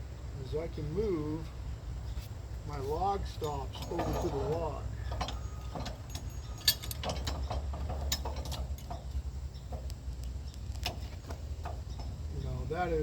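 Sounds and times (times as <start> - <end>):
steady low rumble: 0.0 - 13.0
metal clicks and clanks: 3.3 - 12.4.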